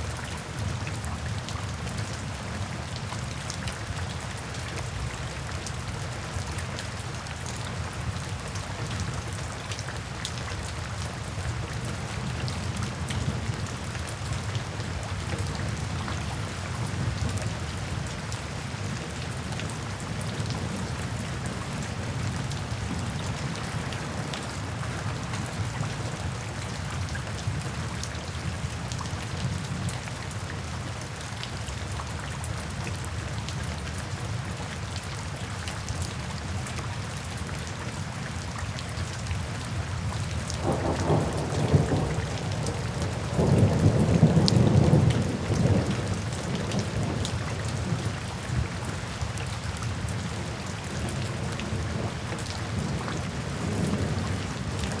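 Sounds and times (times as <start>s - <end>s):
steady rain falling: 0.0s - 55.0s
thunder rumbling: 40.6s - 47.9s.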